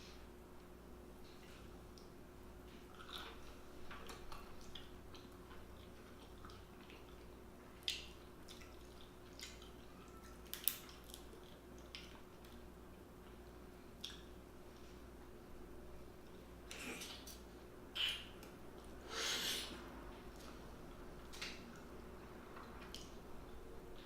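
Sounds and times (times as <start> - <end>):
faint steady hum: 0.0 - 24.0
wet chewing and mouth smacks: 2.9 - 12.6, 14.0 - 14.4.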